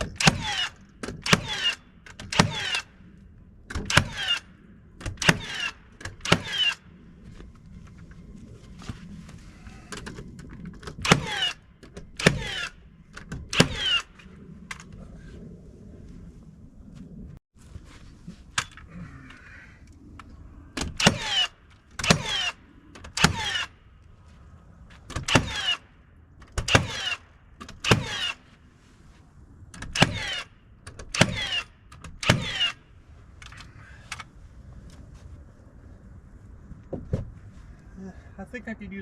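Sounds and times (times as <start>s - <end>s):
nail gun shots: 0.0s - 2.9s, 3.7s - 6.8s, 11.0s - 14.1s, 20.8s - 23.7s, 25.1s - 25.9s, 26.5s - 28.4s, 29.8s - 32.8s.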